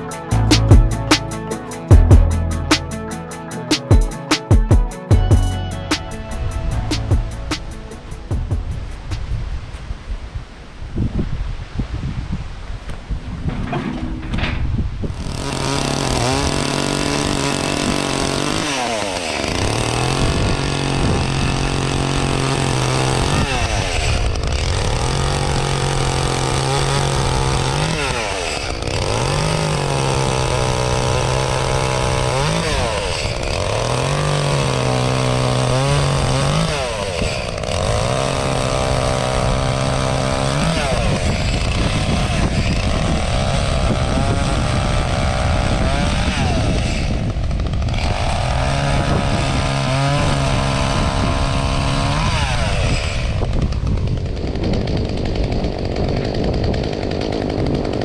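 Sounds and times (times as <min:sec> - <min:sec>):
chainsaw running at high revs: 0:15.1 - 0:58.0.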